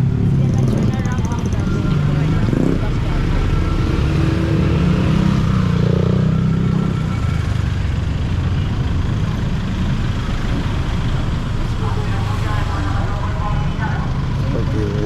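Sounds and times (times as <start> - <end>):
street noise: 0.0 - 15.0
vehicle engine running: 0.0 - 15.0.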